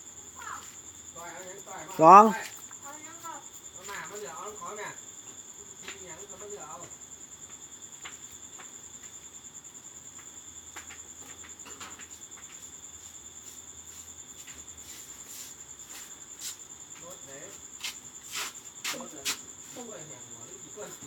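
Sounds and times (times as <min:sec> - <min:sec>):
insects trilling: 0:00.0 - 0:21.0.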